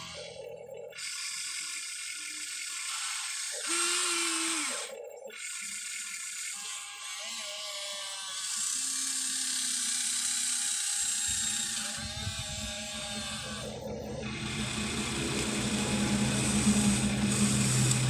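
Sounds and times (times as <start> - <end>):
electric gear motors whirring: 0.0 - 18.0
low rumble: 12.0 - 18.0.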